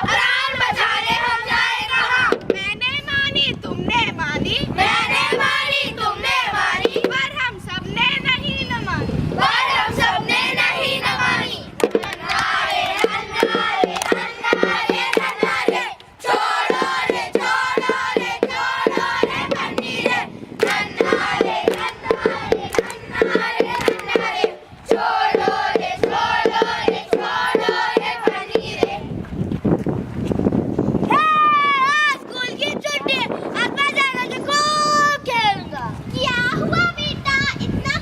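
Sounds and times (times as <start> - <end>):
children chanting in unison: 0.0 - 2.4, 4.7 - 7.3, 9.4 - 29.0
fast percussive beat: 6.8 - 7.4, 11.8 - 29.0.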